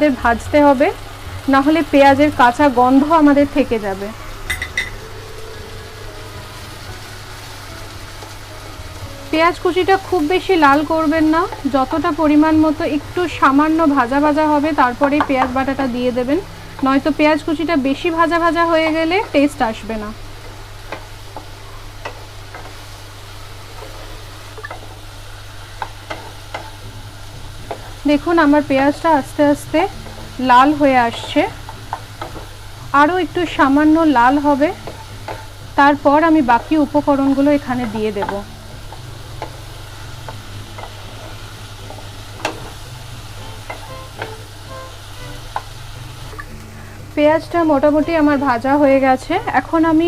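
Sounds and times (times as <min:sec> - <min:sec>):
onions sizzling in a pan: 0:00.0 - 0:50.0
spatula knocking against pan: 0:34.8 - 0:35.5, 0:43.6 - 0:44.4.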